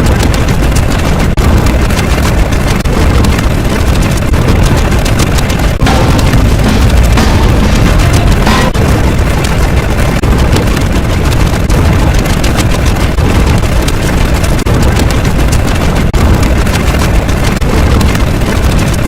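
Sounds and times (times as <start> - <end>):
distorted booming noise: 0.0 - 19.0.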